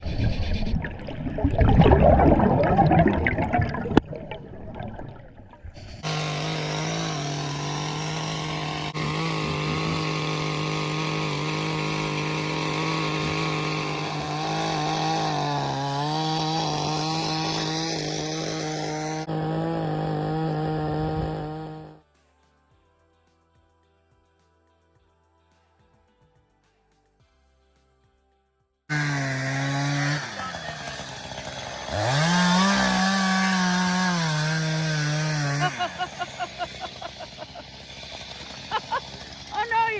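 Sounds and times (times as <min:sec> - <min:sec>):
chainsaw cutting ice: 0:05.8 - 0:22.0, 0:28.9 - 0:39.9.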